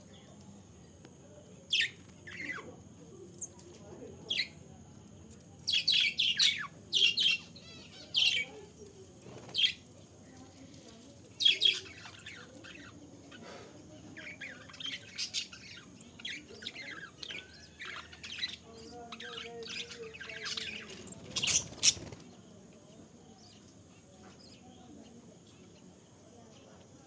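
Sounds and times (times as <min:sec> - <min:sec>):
baby parrots chirping: 0:05.7 - 0:08.5, 0:11.4 - 0:13.4, 0:14.1 - 0:22.2.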